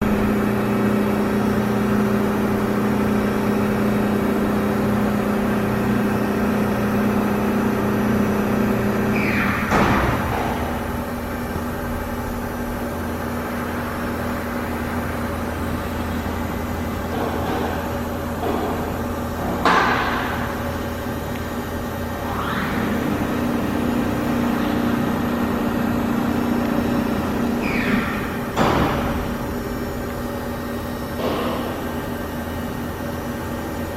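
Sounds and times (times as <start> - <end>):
machine mechanical hum: 0.0 - 33.9.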